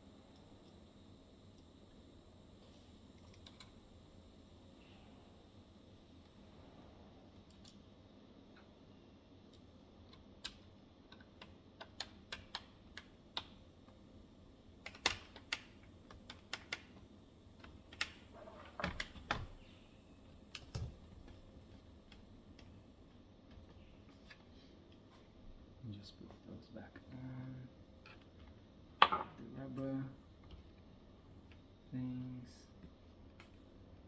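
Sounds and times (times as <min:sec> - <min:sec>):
laptop keyboard typing: 0:10.1 - 0:13.6, 0:14.8 - 0:17.0.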